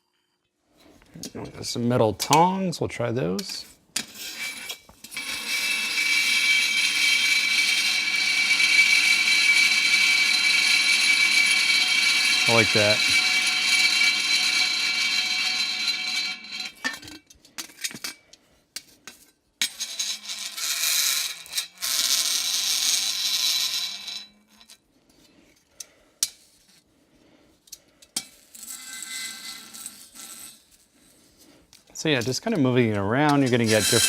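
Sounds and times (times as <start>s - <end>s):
metal tongs squealing on dry ice: 4.0s - 17.2s, 19.7s - 24.8s, 28.1s - 31.2s, 32.1s - 34.0s.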